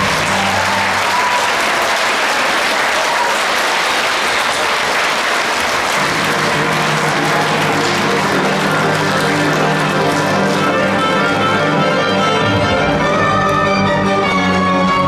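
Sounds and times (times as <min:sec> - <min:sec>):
music: 0:00.0 - 0:01.4, 0:05.9 - 0:15.0
audience applauding: 0:00.0 - 0:14.6.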